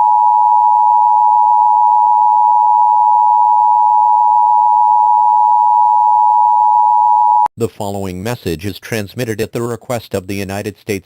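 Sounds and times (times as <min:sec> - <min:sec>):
two-tone alarm signal: 0:00.0 - 0:07.5.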